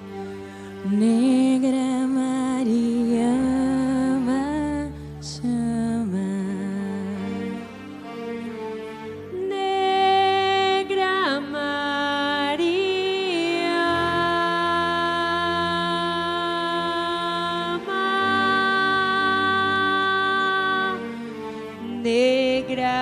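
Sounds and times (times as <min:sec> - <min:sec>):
sustained musical backing: 0:00.0 - 0:23.0
person singing long held notes: 0:09.4 - 0:21.1.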